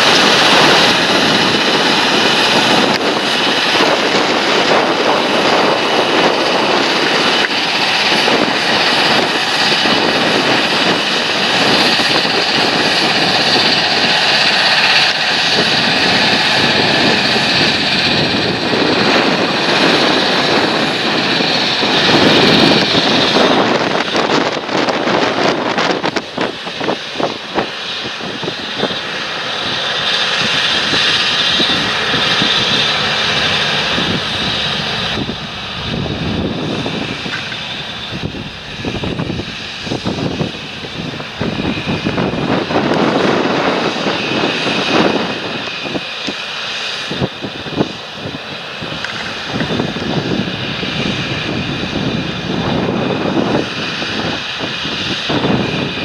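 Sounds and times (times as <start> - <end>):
tractor engine running: 0.0 - 44.7.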